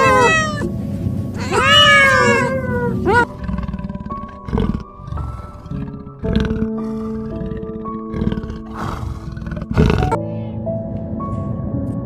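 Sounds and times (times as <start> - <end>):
cat meowing: 0.0 - 0.7, 1.4 - 3.4
background music: 0.0 - 12.0.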